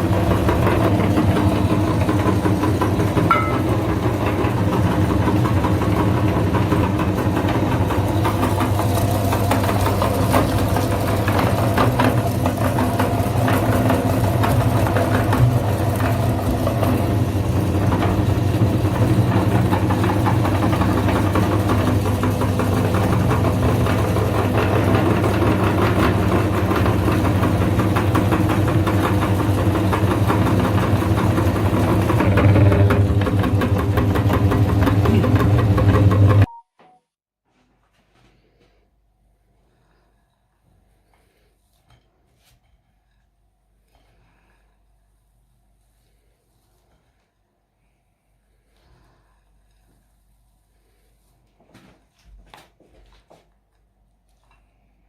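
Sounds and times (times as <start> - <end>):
electric grinder motor humming: 0.0 - 36.4.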